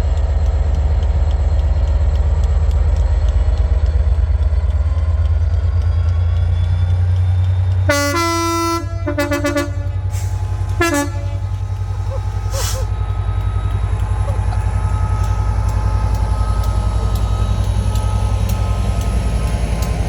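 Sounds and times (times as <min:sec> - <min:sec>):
diesel engine throb: 0:00.0 - 0:20.0
train horn two-tone toots: 0:07.9 - 0:17.3.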